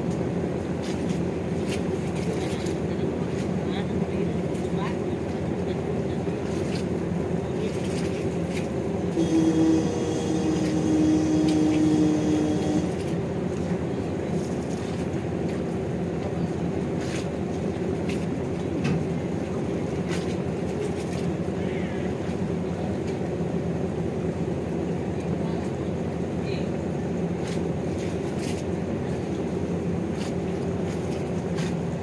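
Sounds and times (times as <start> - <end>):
ship engines rumbling: 0.0 - 32.0
ship horn blast: 9.1 - 13.2.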